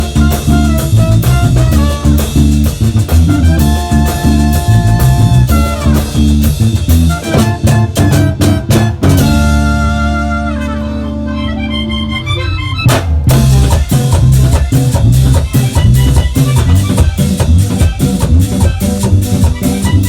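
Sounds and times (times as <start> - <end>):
button accordion playing: 0.0 - 2.6, 3.2 - 20.0
percussion: 0.0 - 10.6, 12.8 - 20.0
bass line: 0.0 - 20.0.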